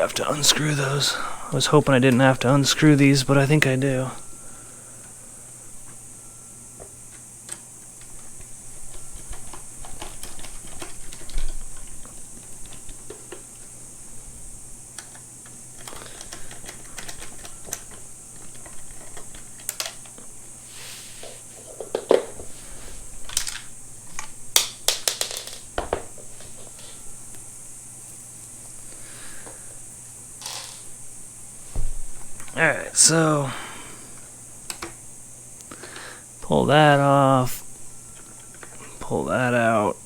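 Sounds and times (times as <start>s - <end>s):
small parts being handled: 23.2s - 27.0s, 30.4s - 31.0s.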